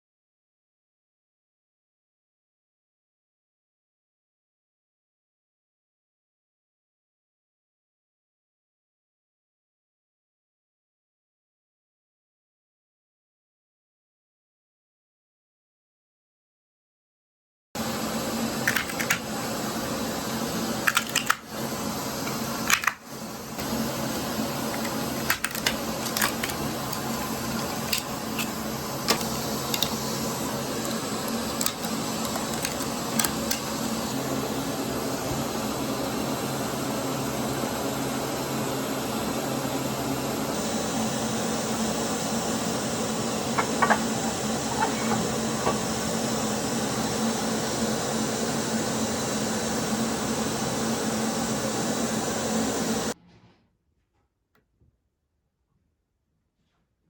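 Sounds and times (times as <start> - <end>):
shop machine running: 17.8 - 53.2.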